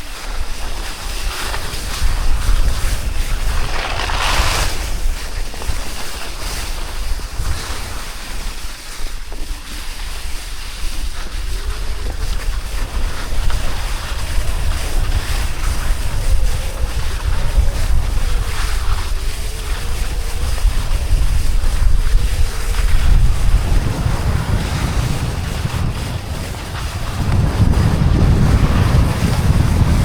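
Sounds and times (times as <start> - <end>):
ski edges scraping over snow: 0.1 - 30.0
wind buffeting microphone: 11.0 - 30.0.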